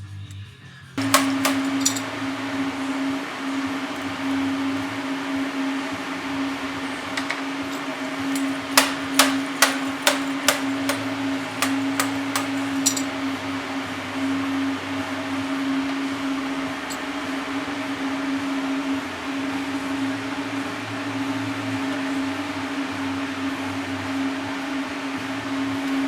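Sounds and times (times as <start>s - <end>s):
steady machine hum: 1.0s - 26.0s
sharp hammer-like knocks: 8.2s - 13.1s.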